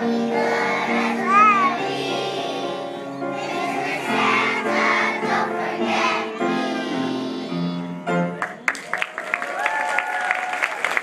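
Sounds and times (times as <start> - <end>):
children singing with music: 0.0 - 8.4
audience clapping: 8.4 - 11.0.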